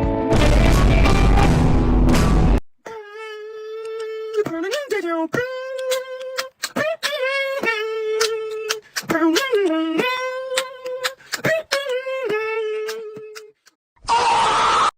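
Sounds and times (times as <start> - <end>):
person singing bending notes: 2.8 - 13.8
sharp mouth clicks and pops: 3.8 - 12.0.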